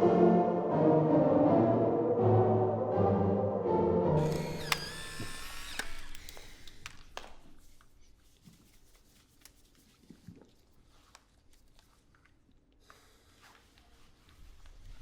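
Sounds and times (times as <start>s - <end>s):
faint clicks: 4.2s - 8.0s.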